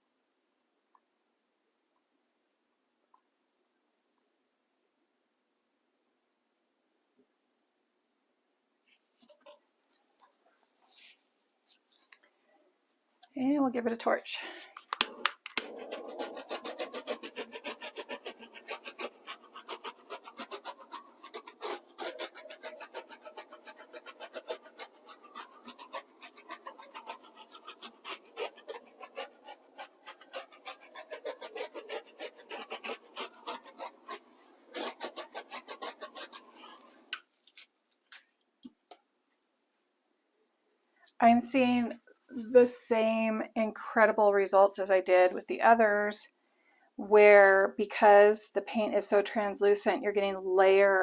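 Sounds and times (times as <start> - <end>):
torch flame hissing and crackling: 14.0 - 37.3.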